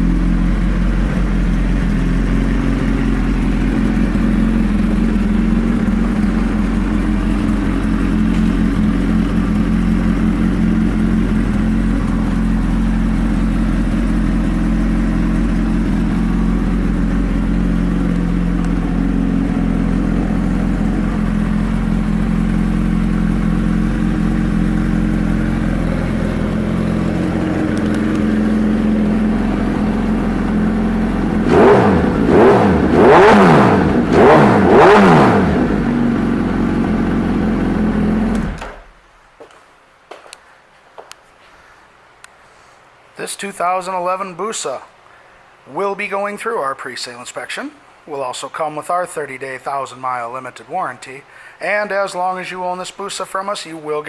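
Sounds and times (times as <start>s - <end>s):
motorcycle engine idling and revving: 0.0s - 38.9s.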